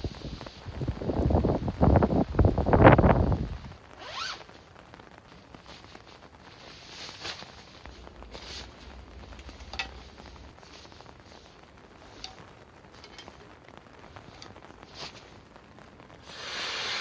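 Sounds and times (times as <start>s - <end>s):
rustling: 0.0s - 16.2s
zipper being pulled: 4.0s - 4.5s, 14.4s - 15.2s.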